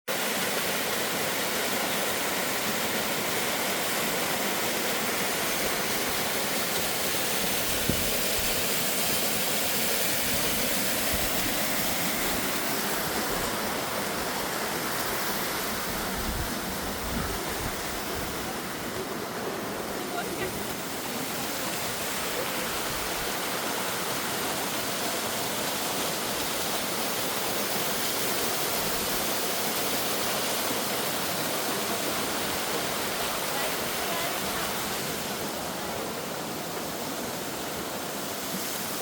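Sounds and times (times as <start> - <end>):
waterfall roar: 0.1 - 39.0
wind thumps on microphone: 7.8 - 8.4, 15.9 - 18.5.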